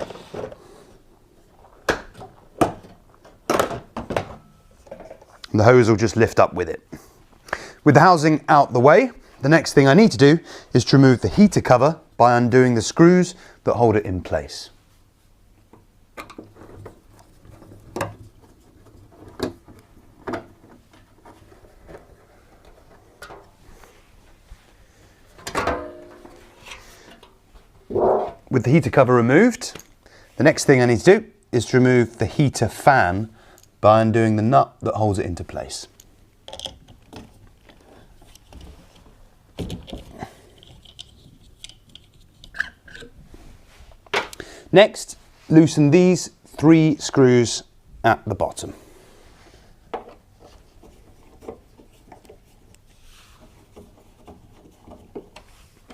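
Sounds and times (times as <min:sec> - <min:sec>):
metal cover being handled: 0:25.4 - 0:28.4
metal parts being handled: 0:39.7 - 0:43.2.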